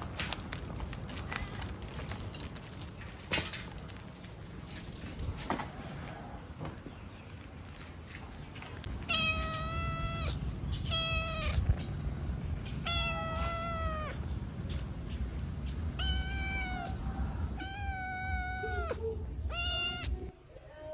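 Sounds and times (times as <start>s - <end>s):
cat meowing: 9.0s - 11.9s, 12.8s - 14.3s, 16.0s - 20.3s.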